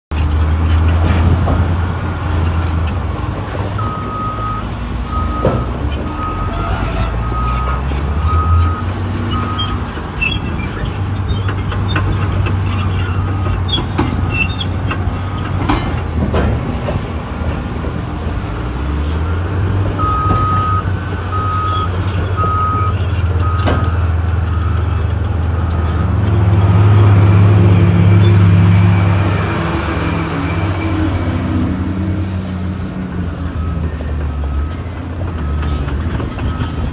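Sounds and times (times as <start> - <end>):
excavator diesel engine under load: 0.1 - 36.9
alarm beeping: 3.8 - 8.8.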